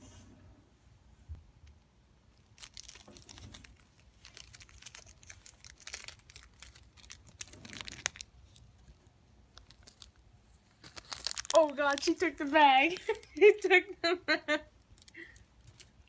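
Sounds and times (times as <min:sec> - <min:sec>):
bag crinkling and crackling: 0:02.4 - 0:13.8, 0:14.8 - 0:16.0.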